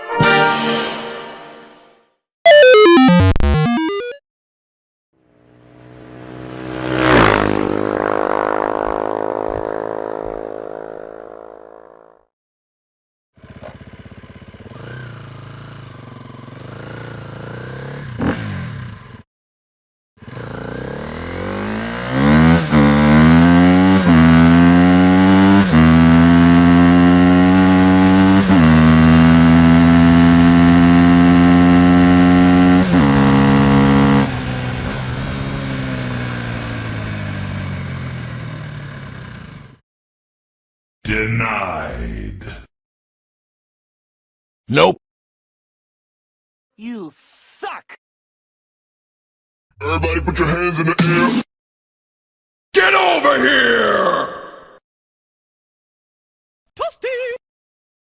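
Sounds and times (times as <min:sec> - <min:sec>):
vehicle engine revving: 0:13.4 - 0:19.0, 0:20.2 - 0:39.8.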